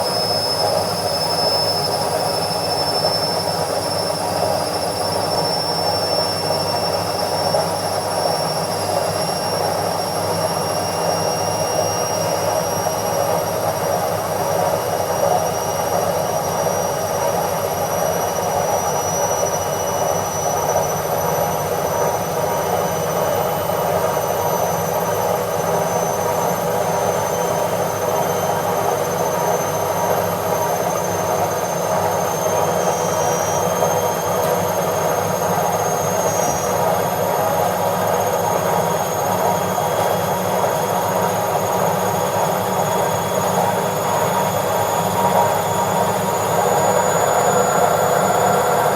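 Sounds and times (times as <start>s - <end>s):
high motor whine: 31.4s - 48.9s.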